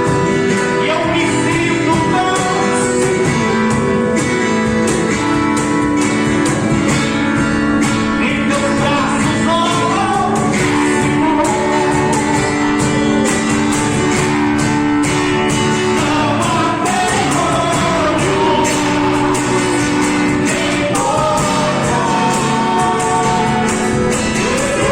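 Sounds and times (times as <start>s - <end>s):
people singing: 0.0s - 24.9s
steady drum beat: 0.0s - 24.9s
strummed guitar: 0.0s - 24.9s.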